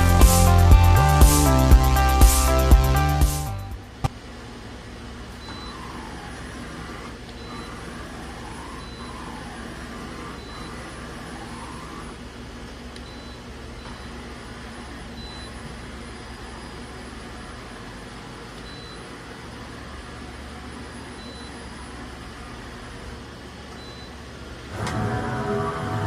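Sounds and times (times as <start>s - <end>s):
machining center humming: 0.0s - 26.0s
machine whines gliding in pitch: 5.4s - 18.1s, 24.6s - 26.0s.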